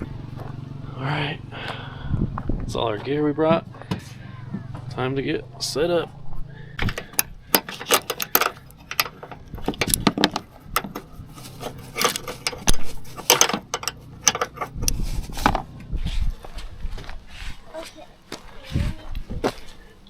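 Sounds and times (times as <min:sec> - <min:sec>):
camping gear clinking and rattling: 0:06.8 - 0:15.9.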